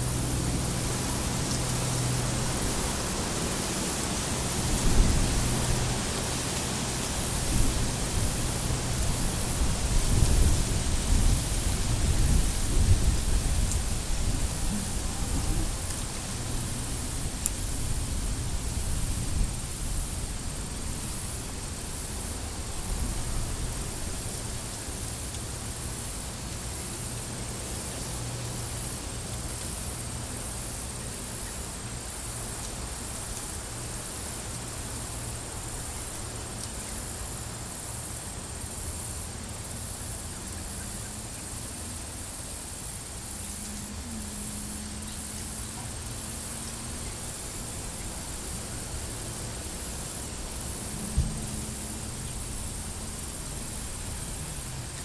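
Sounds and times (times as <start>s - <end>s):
insects pulsing: 0.0s - 55.0s
steady hiss: 0.0s - 55.0s
faint low drone: 40.3s - 55.0s.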